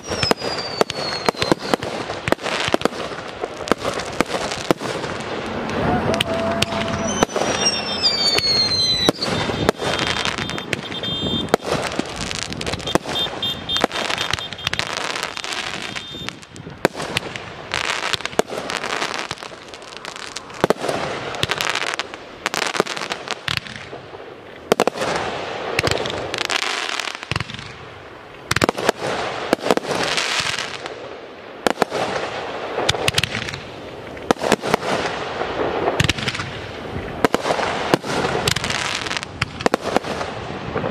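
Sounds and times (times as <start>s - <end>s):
falling firework whistles: 0.0s - 1.9s, 6.0s - 16.5s
firework shell bursts and crackling: 0.0s - 27.8s, 31.6s - 40.9s.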